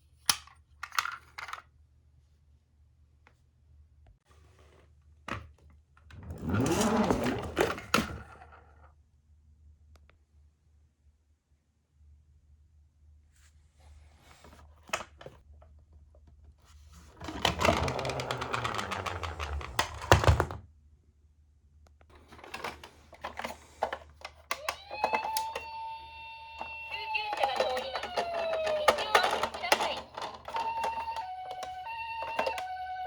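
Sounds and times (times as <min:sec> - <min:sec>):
metal toy car rattling down cardboard: 0:17.0 - 0:20.6, 0:26.5 - 0:32.8
toy cars clicking: 0:17.2 - 0:20.5, 0:22.2 - 0:33.0
toy car knocking: 0:17.2 - 0:20.6, 0:22.2 - 0:33.0
toy electronic siren: 0:24.5 - 0:33.0.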